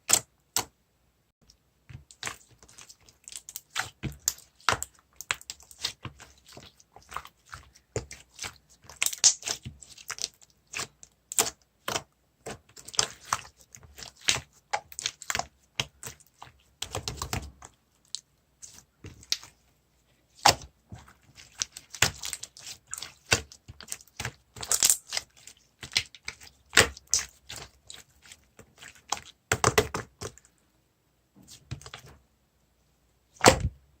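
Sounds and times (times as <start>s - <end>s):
slime clicking and popping: 9.0s - 9.6s.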